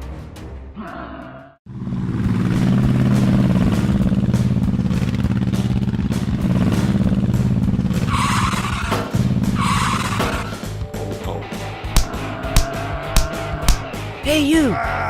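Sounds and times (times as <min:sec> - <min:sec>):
vehicle engine running: 0:01.7 - 0:10.8.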